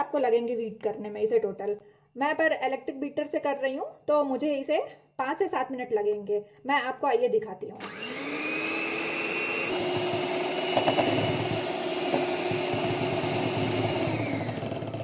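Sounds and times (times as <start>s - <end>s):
electric hand beater whining: 7.8s - 15.0s.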